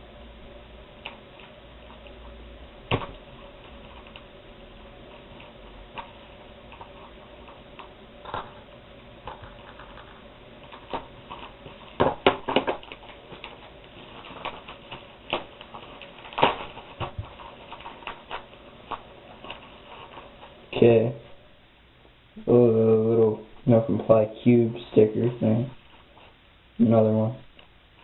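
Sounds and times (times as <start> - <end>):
box packing rustles and scrapes: 9.3 - 20.8.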